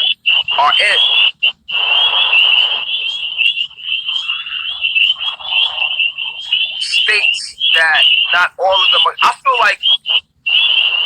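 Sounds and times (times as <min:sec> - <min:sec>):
static hiss: 0:01.7 - 0:09.8
high-pitched warbling electronic whine: 0:01.8 - 0:08.2.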